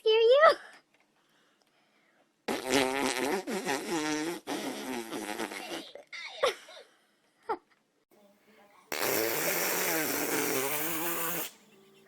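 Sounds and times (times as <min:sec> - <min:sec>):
long wavering fart: 0:02.5 - 0:06.0, 0:08.9 - 0:11.5.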